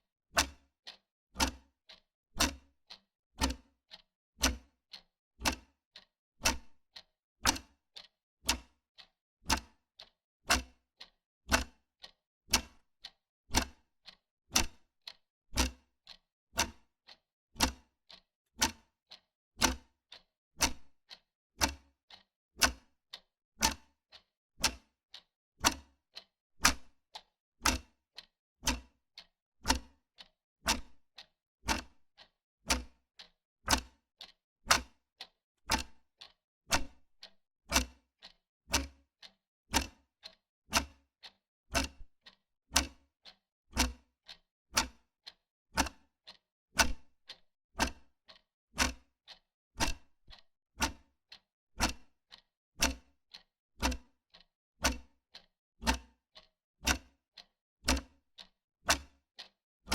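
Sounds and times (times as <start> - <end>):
wall clock ticking: 11.5 - 11.7, 12.5 - 12.8, 21.6 - 22.8, 23.6 - 25.8, 26.6 - 26.9, 29.7 - 32.9, 33.7 - 38.0, 38.7 - 54.4, 55.3 - 59.5.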